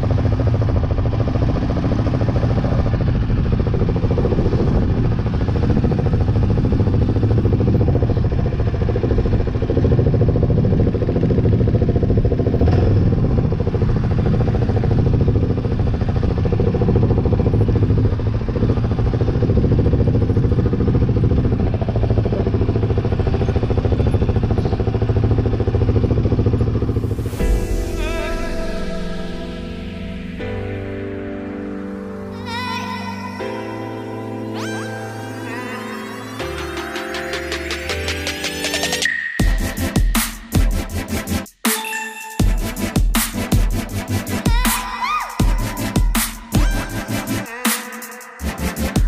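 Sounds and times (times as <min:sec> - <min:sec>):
off-road vehicle engine running: 0:00.0 - 0:30.9, 0:36.6 - 0:41.5, 0:42.4 - 0:47.7, 0:48.3 - 0:49.0.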